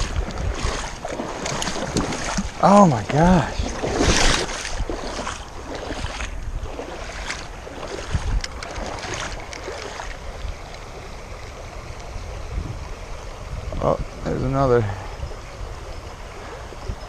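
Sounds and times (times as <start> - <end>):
creek water running: 0.0 - 17.0
wind buffeting microphone: 0.0 - 17.0.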